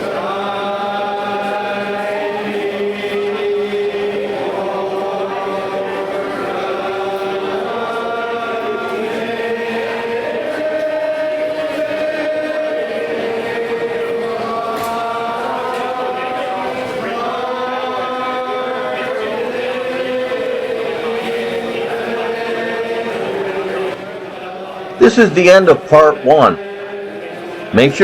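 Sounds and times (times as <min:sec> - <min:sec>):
choir-like held notes: 0:00.0 - 0:28.0.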